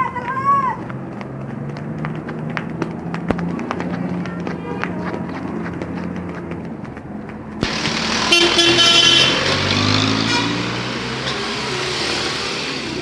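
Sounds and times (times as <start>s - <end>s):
bus engine driving past: 0.0s - 13.0s
multi-tone musical bus horn: 8.2s - 11.0s.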